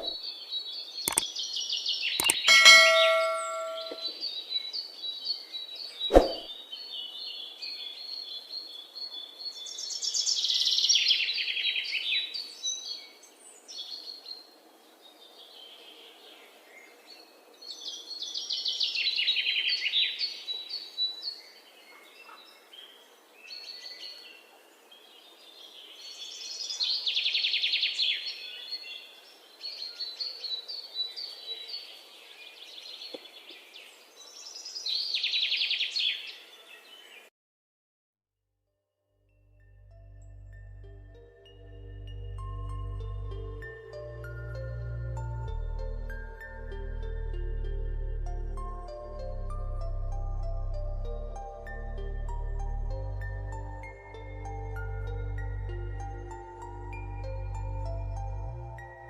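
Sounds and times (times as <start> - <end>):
high bird chirps: 1.1 - 1.3, 2.1 - 4.3
sharp click: 1.1 - 1.3, 2.2 - 4.1.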